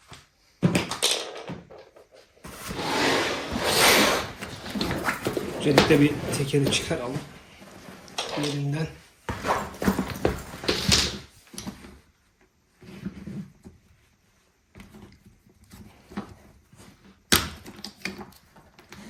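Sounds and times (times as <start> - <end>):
handling noise: 2.4 - 11.3.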